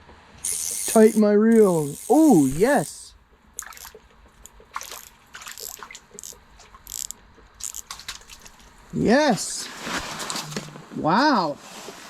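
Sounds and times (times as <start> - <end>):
fishing reel clicking and ratcheting: 0.4 - 3.0, 3.6 - 8.0.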